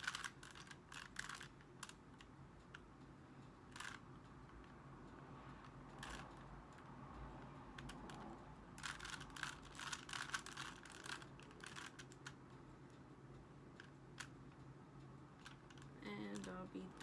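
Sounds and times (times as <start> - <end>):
puzzle cube clicking: 0.0 - 2.0, 8.8 - 12.4.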